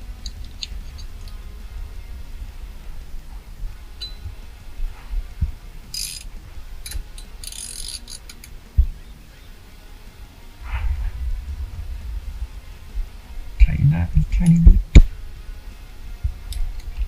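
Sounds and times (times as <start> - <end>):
ratchet-like rasps: 5.9 - 8.5.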